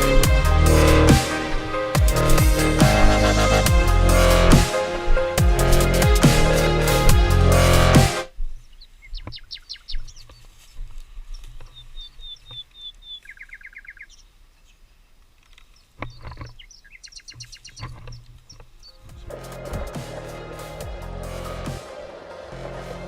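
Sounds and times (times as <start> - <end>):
small birds singing: 8.4 - 20.6.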